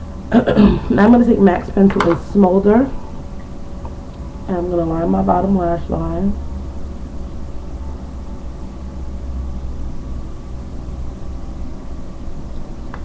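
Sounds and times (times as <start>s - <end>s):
low hum: 0.0s - 13.0s.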